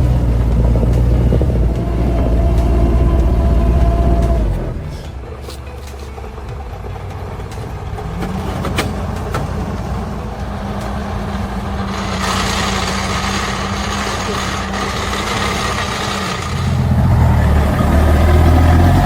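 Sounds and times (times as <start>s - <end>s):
truck engine under load: 0.0s - 19.0s
hiss: 10.7s - 17.2s.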